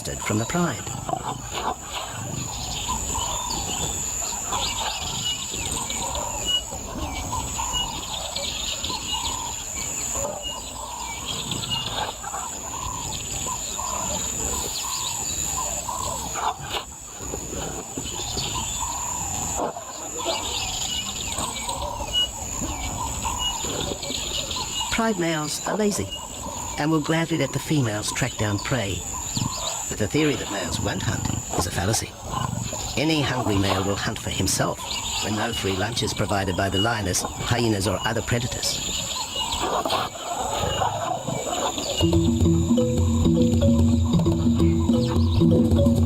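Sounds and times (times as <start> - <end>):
birds chirping: 0.0 - 46.0
high-pitched insect drone: 40.5 - 46.0.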